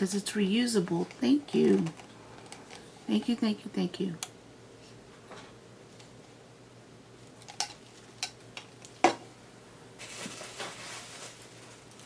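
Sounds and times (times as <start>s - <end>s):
soft rustling: 10.0s - 12.0s.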